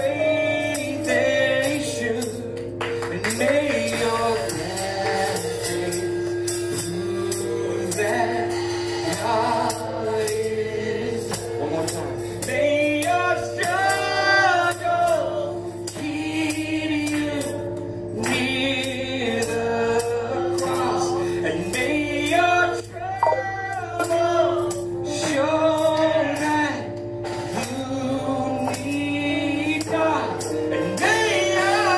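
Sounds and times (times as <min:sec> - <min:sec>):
band accompaniment: 0:00.0 - 0:14.4, 0:21.6 - 0:28.0
percussion steady beat: 0:00.0 - 0:21.0, 0:23.2 - 0:27.8
men's group singing gospel: 0:00.0 - 0:31.9.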